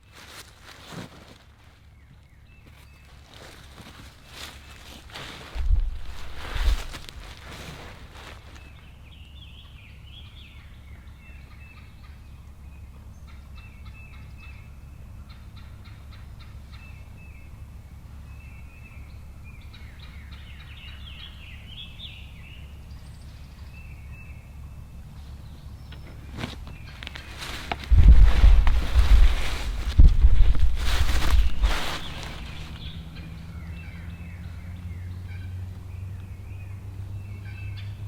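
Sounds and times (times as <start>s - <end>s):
steady low rumble: 1.6s - 37.6s
turkeys calling: 2.1s - 38.0s
turkey gobbling: 15.2s - 17.0s.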